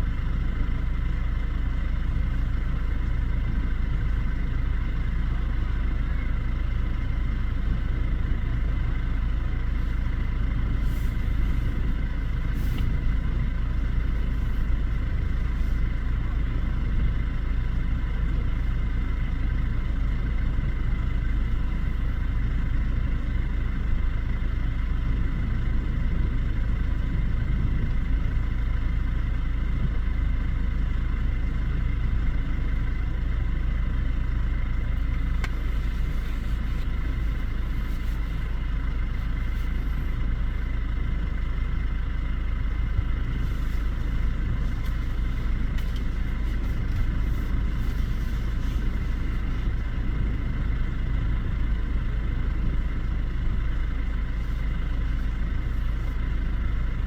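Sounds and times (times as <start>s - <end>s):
faint steady hum: 0.0s - 57.0s
vehicle engine rumbling: 0.0s - 57.0s.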